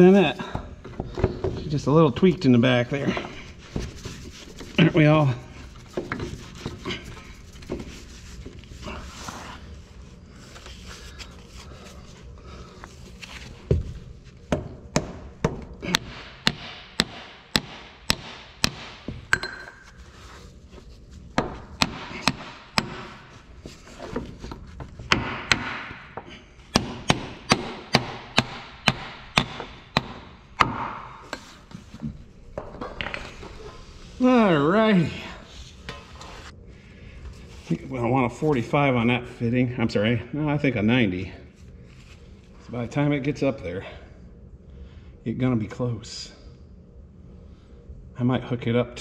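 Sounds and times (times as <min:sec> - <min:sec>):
scraping and handling noise: 0:00.7 - 0:14.6.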